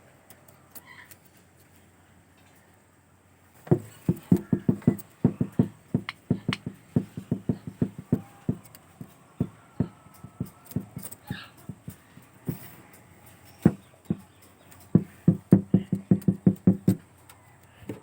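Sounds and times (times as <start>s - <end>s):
sharp clicks or knocks: 3.7s - 12.7s.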